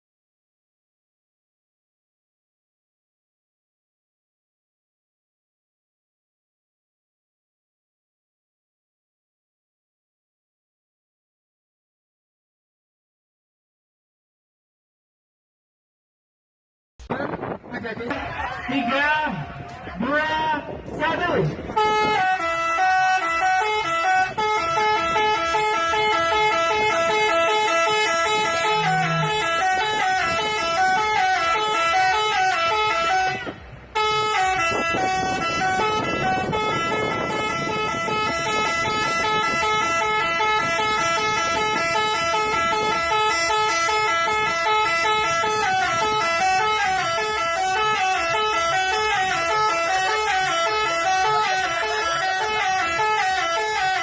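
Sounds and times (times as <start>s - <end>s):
musical air horn playing tune: 21.7s - 54.0s.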